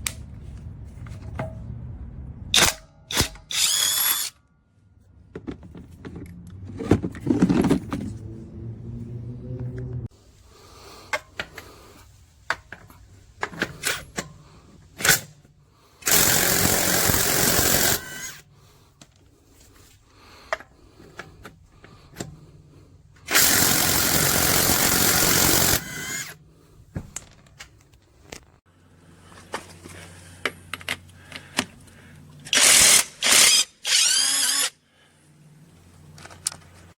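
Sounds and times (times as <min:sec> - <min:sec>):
impact wrench running: 0:03.5 - 0:04.3, 0:16.0 - 0:18.4, 0:23.3 - 0:26.4, 0:32.5 - 0:34.8.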